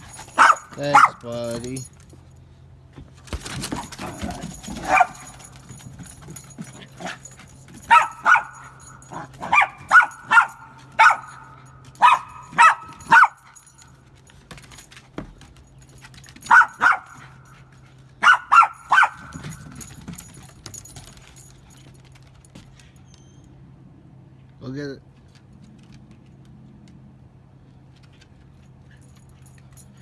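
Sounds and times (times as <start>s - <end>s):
dog barking: 0.2s - 1.4s, 3.8s - 5.6s, 7.8s - 13.6s, 16.4s - 17.4s, 18.2s - 19.6s.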